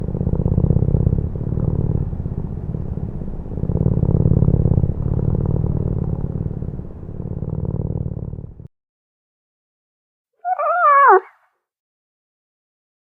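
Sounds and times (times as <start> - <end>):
cat purring: 0.0 - 8.7, 10.4 - 11.3.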